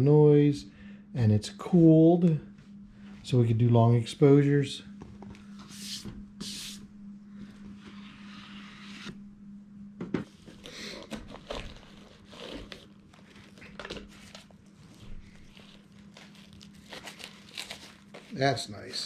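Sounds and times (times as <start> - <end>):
faint steady hum: 0.0 - 19.0
packaging rustling and crinkling: 10.4 - 18.9.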